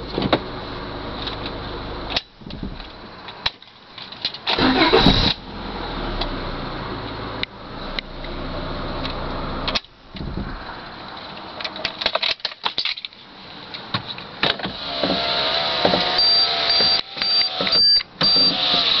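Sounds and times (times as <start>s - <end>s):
car engine running: 0.0s - 3.4s, 4.6s - 11.3s
high beep: 16.2s - 18.6s.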